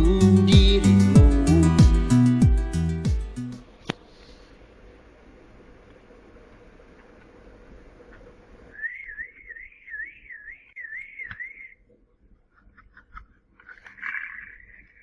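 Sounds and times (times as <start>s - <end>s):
faint steady background noise: 3.6s - 15.0s
toy warbling whistle: 8.7s - 11.8s.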